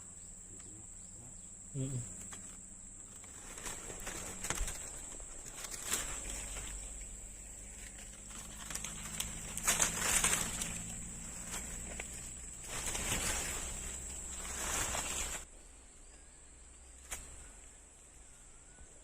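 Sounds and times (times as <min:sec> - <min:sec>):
rustling and handling noises: 0:02.2 - 0:15.5.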